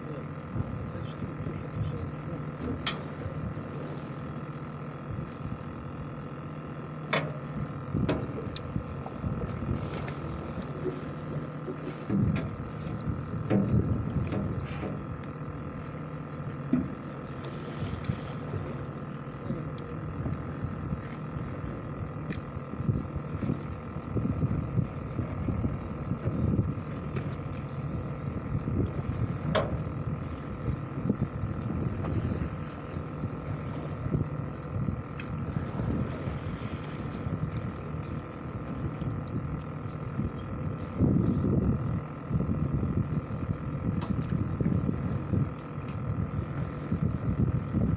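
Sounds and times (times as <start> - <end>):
boat engine running: 0.0 - 47.9
wind gusting on microphone: 34.0 - 47.9.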